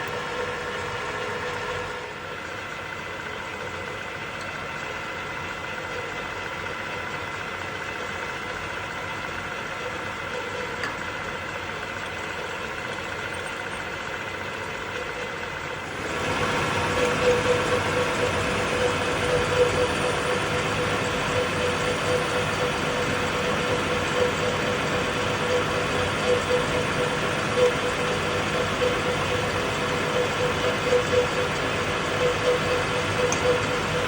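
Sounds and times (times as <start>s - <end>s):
machine tool motor humming: 9.4s - 34.0s.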